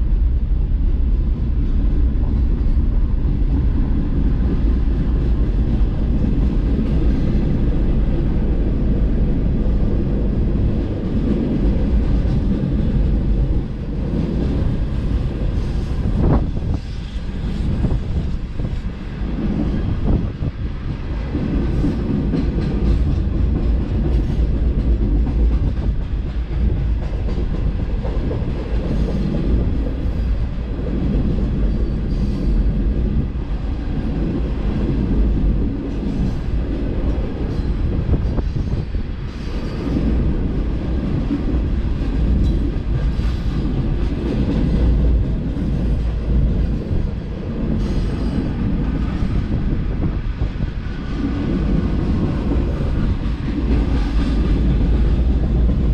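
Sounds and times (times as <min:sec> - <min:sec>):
steel wheels rumbling on rail: 0:00.0 - 0:55.9
train wheel clacks: 0:01.9 - 0:55.9.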